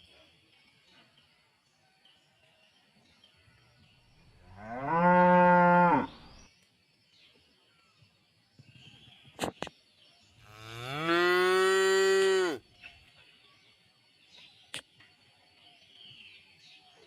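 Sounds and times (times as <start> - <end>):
cow mooing: 10.6 - 12.6.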